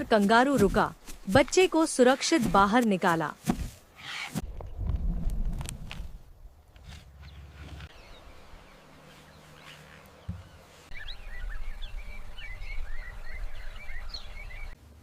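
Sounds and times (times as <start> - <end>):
birds chirping: 6.9 - 14.8.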